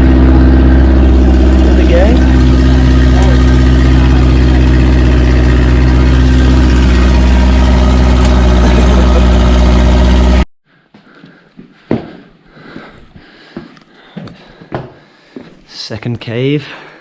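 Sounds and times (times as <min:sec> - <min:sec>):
loud engine running: 0:00.0 - 0:10.5.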